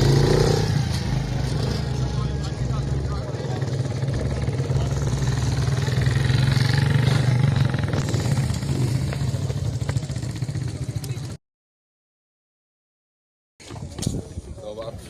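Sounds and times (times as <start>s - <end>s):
small motorcycle engine running: 0.0s - 11.4s.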